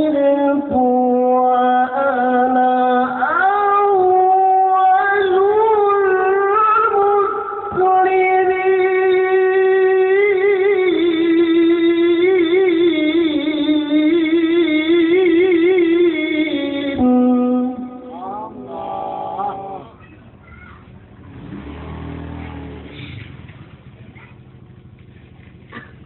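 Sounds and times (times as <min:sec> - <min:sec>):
person reciting in long melodic notes: 0:00.0 - 0:20.1.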